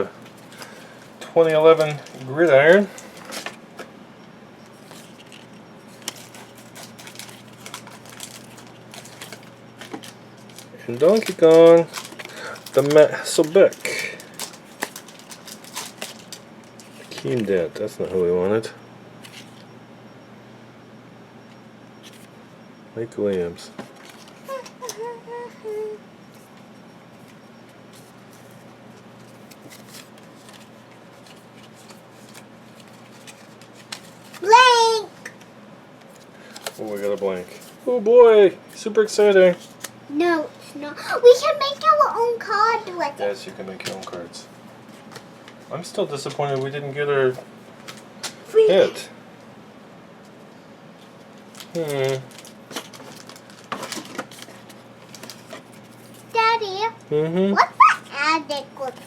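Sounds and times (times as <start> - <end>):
faint steady hum: 0.0 - 59.0
cardboard cards rustling and clicking: 4.8 - 18.1, 29.2 - 34.5, 51.4 - 56.3
foil pack crackling: 5.9 - 17.4, 51.5 - 56.4.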